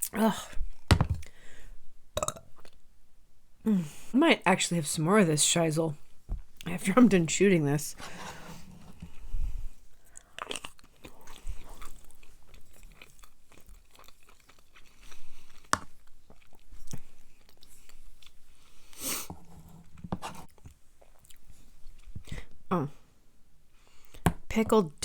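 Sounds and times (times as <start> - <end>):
person chewing food: 8.6 - 22.6.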